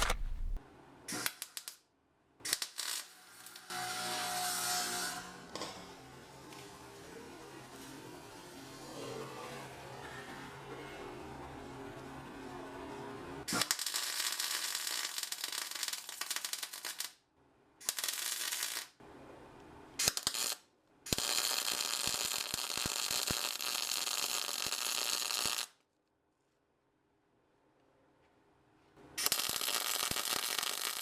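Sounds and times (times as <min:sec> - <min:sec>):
welding arc crackling: 0:29.3 - 0:31.0.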